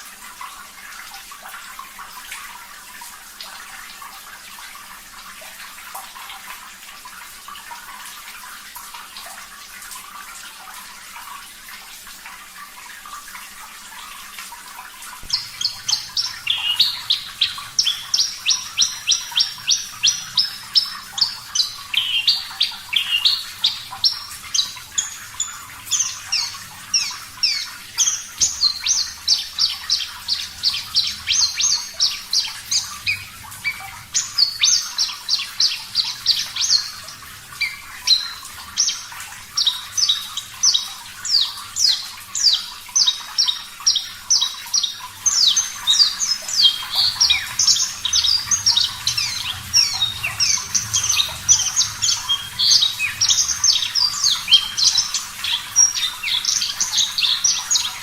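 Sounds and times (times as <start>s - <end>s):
lark singing high chirps: 15.2s - 58.0s.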